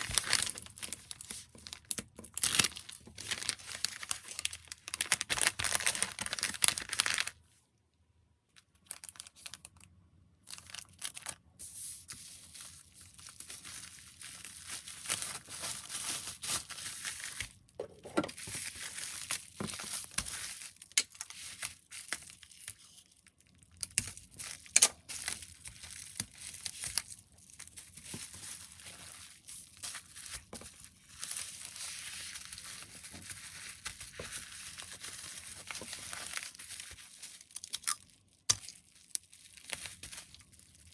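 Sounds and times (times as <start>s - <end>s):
plastic packaging crinkling: 0.0s - 7.5s, 8.6s - 40.9s.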